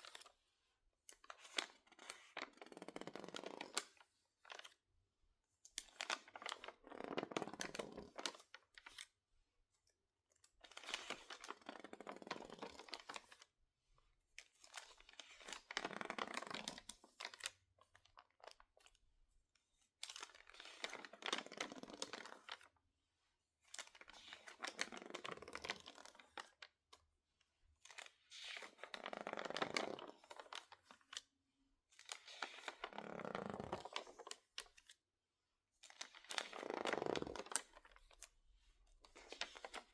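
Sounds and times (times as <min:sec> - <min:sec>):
stiff paper pages crinkling: 0:39.0 - 0:39.9.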